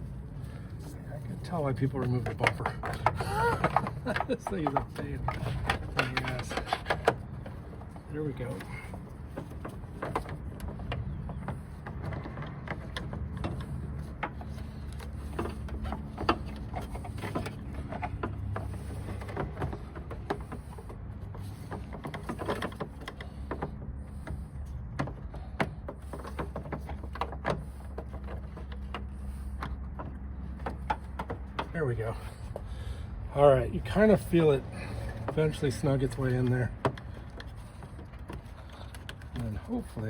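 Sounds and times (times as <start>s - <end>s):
steady low hum: 0.0s - 40.0s
small clicks and knocks: 1.4s - 32.7s.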